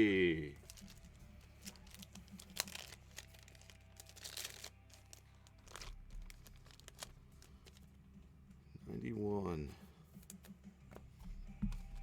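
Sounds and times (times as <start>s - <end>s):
wrapper and cardboard rustling: 0.6s - 8.0s.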